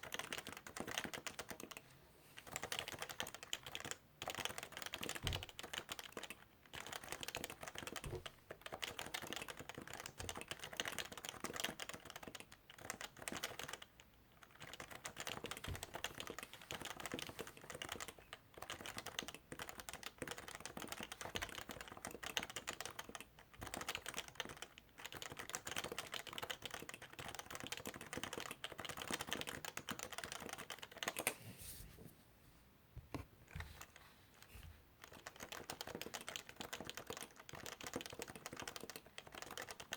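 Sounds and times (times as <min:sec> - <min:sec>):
keyboard typing: 0:00.0 - 0:01.8, 0:02.4 - 0:31.4, 0:35.0 - 0:39.9.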